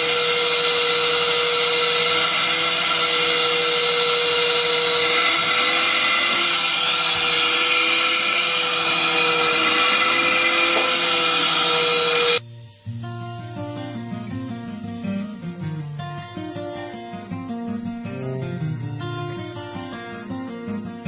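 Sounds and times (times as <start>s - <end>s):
small electric motor whirring: 0.0s - 12.4s.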